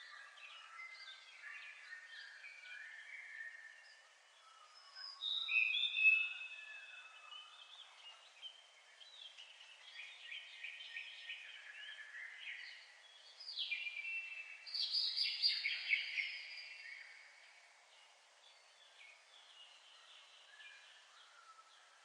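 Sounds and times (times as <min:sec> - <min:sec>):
songbirds chirping: 0:00.0 - 0:22.0.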